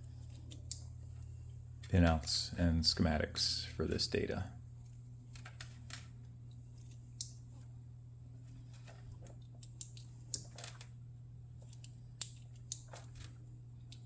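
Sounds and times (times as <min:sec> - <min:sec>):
steady low hum: 0:00.0 - 0:14.0
small sharp clicks of wiring: 0:00.4 - 0:00.9, 0:06.8 - 0:07.4, 0:09.6 - 0:10.9, 0:11.6 - 0:14.0.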